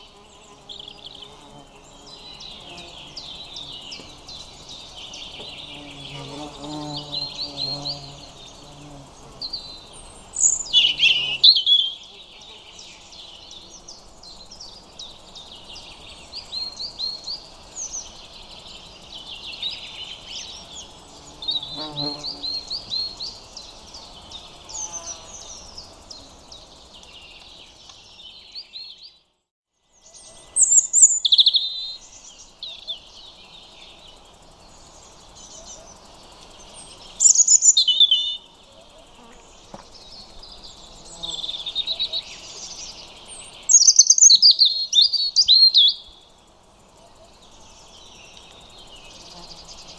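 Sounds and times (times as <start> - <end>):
robins singing: 2.0 - 14.6, 32.7 - 46.4.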